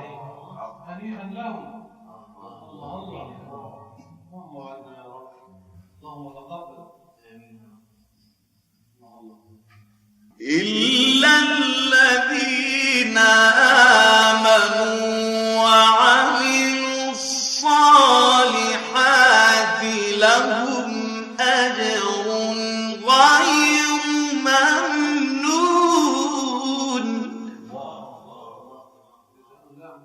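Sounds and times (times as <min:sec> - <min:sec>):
man reciting melodically: 0:10.3 - 0:30.0.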